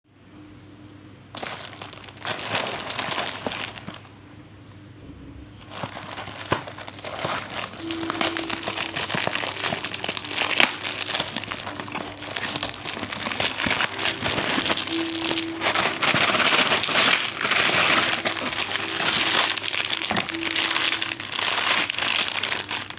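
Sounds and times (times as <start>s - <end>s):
candy packaging crinkling: 1.3s - 4.1s, 5.6s - 22.9s.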